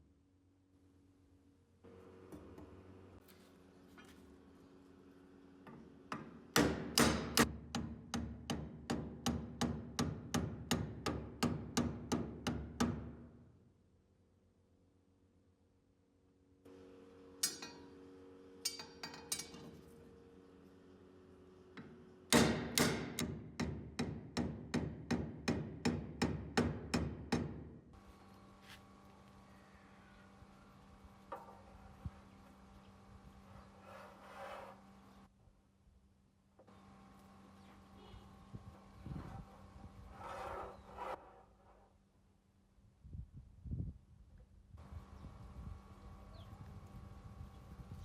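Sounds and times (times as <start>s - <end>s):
hammer striking metal: 6.1s - 13.0s, 17.4s - 18.0s, 18.6s - 19.8s, 21.8s - 27.6s.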